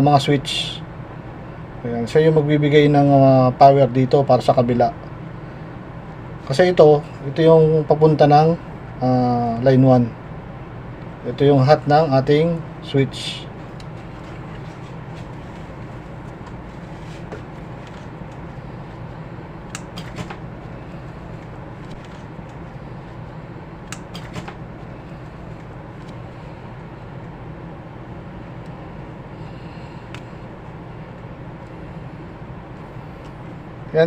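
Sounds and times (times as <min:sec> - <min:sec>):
low background hum: 0:00.0 - 0:34.0.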